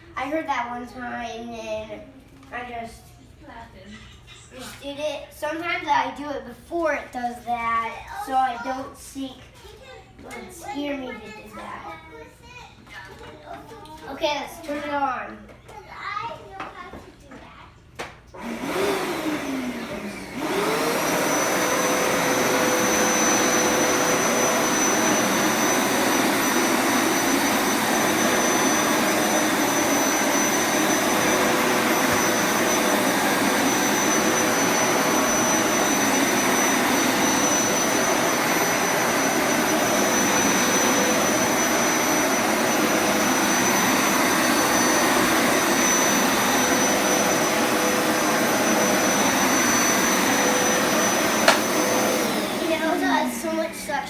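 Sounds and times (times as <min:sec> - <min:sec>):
vacuum cleaner motor whine: 0:18.3 - 0:54.0.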